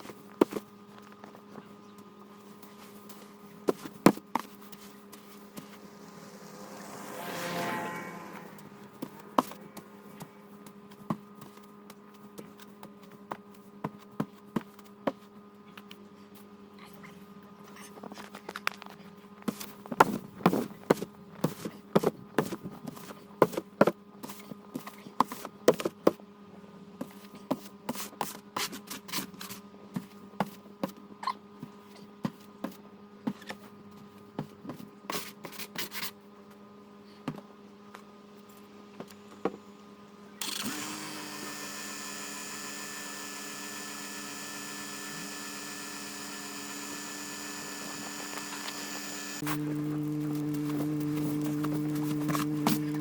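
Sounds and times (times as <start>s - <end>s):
electrical hum: 38.9s - 53.0s.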